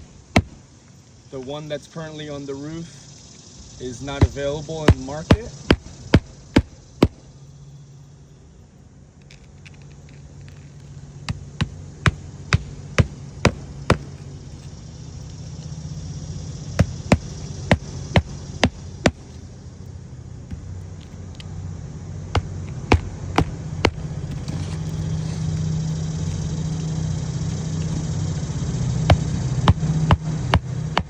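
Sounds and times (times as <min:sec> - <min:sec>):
hammer striking roofing nails: 0:00.0 - 0:00.7, 0:04.2 - 0:07.2, 0:11.3 - 0:14.2, 0:16.8 - 0:19.4, 0:22.4 - 0:24.1, 0:29.1 - 0:31.0
low engine-like hum: 0:00.0 - 0:31.0.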